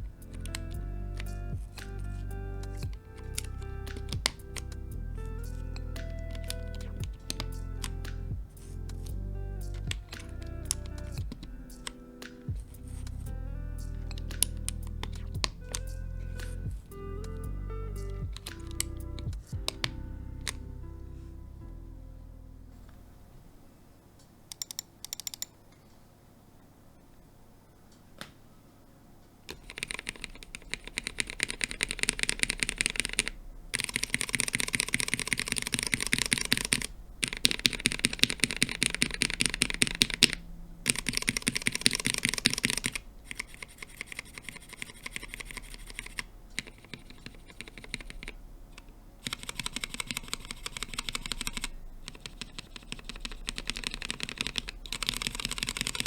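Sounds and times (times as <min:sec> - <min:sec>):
typing on mechanical keyboard: 0:24.5 - 0:25.6, 0:29.5 - 0:56.0.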